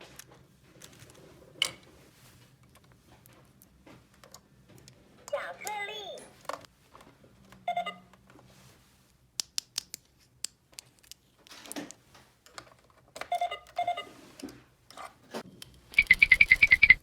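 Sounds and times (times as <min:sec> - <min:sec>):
plastic toy pieces clicking: 0:09.4 - 0:11.3.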